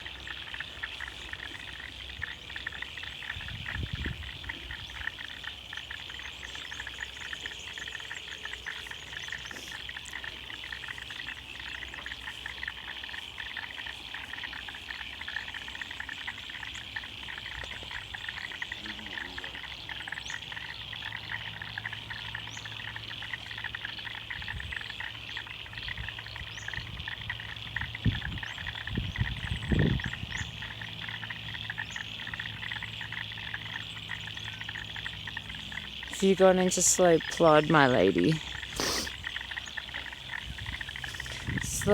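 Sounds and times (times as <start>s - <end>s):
frogs chorus trilling: 0.0s - 41.9s.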